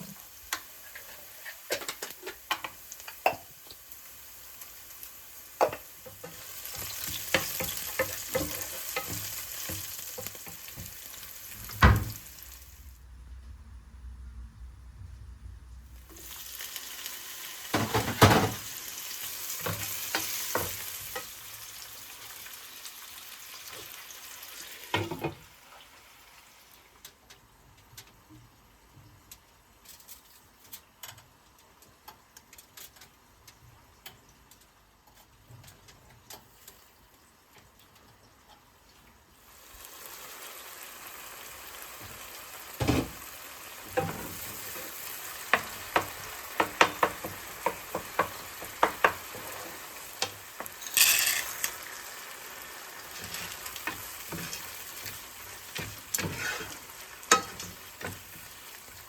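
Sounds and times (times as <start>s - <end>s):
food sizzling in a pan: 0.0s - 13.0s, 15.9s - 27.1s, 39.4s - 59.0s
utensil knocking against pan: 45.5s - 49.3s.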